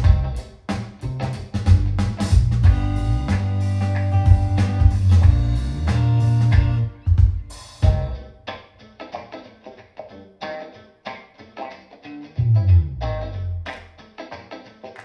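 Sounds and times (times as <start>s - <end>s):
loud rock music: 0.0s - 8.3s.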